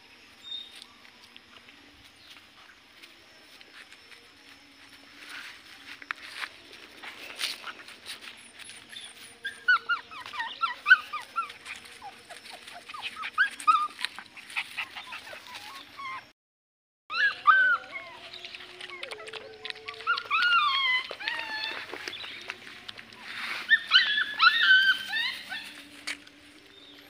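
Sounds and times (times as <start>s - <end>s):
puppy whimpering and yipping: 8.2s - 16.3s, 17.1s - 22.3s, 23.6s - 25.9s.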